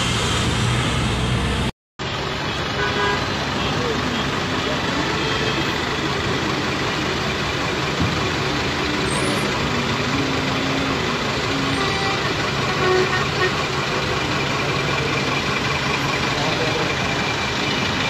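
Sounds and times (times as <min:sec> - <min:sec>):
vehicle engines running: 0:00.0 - 0:18.0
car horn toots: 0:05.0 - 0:05.8, 0:11.6 - 0:13.7.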